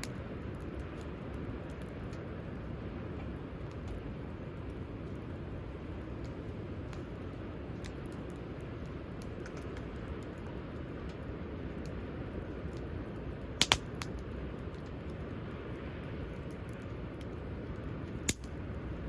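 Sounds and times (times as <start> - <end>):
campfire crackling: 0.0 - 19.0
sharp loud fire pops: 13.6 - 14.0.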